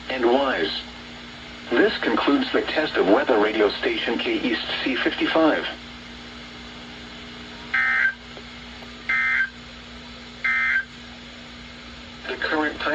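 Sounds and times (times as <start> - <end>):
warbling two-tone data bursts: 9.1 - 9.5, 10.4 - 10.9.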